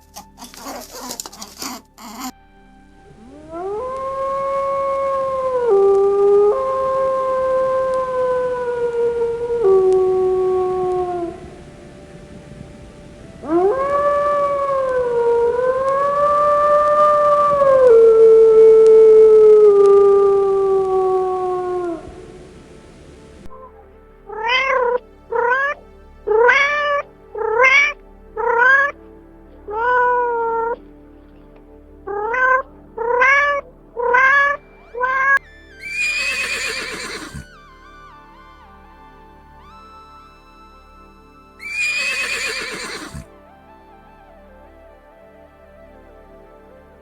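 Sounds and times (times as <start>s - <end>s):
animal howl-like cry: 0.1s - 2.3s, 3.2s - 11.6s, 13.4s - 22.4s, 23.5s - 28.9s, 32.1s - 37.5s, 41.6s - 43.3s
short rising and falling animal cries: 0.4s - 2.3s, 3.3s - 11.3s, 32.1s - 37.5s, 41.6s - 43.3s.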